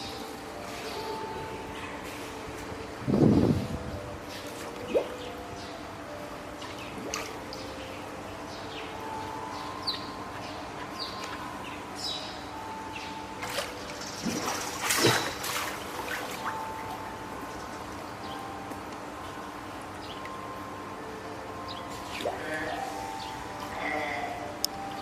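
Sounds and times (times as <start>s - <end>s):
water splashing and trickling: 3.1s - 5.4s, 6.0s - 7.8s, 13.2s - 17.9s, 21.9s - 23.0s
water dripping: 13.4s - 17.7s.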